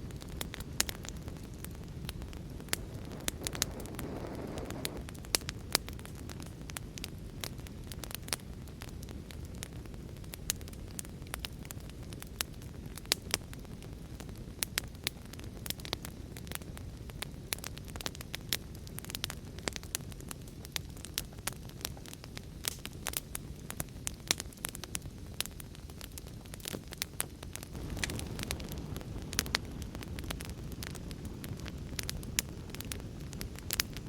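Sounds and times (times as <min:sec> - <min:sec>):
wood fire crackling: 0:00.0 - 0:34.0
storm with heavy rain: 0:02.7 - 0:05.1, 0:27.7 - 0:33.0.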